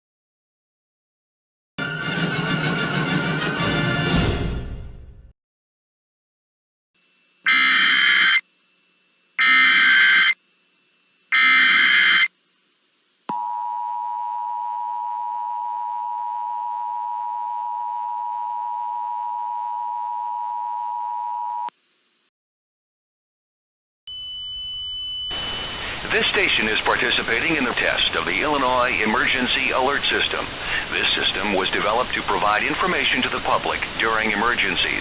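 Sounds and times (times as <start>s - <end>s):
steady attention tone: 7.2s - 12.7s
digital data tone bursts: 7.5s - 8.5s, 9.4s - 10.4s, 11.3s - 12.4s.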